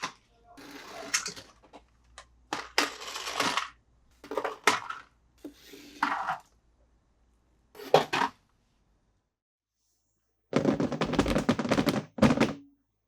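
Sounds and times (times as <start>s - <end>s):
toy cars clinking and rattling: 0.6s - 1.8s, 2.5s - 5.0s.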